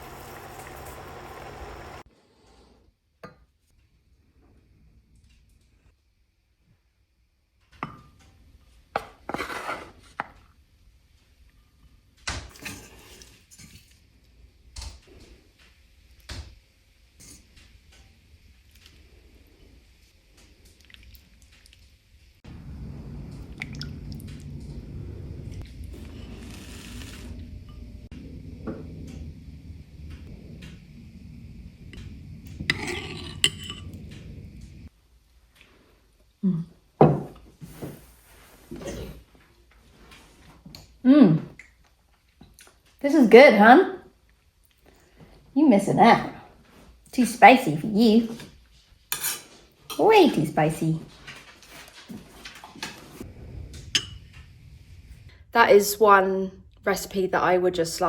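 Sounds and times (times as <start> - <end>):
low steady hum: 17.4 - 35.4, 52.8 - 58.0
scraping rustle: 25.9 - 27.6, 51.0 - 53.9
dishes and cutlery clinking: 32.7 - 34.0, 49.1 - 50.5
cutlery clinking against dish: 49.2 - 50.0.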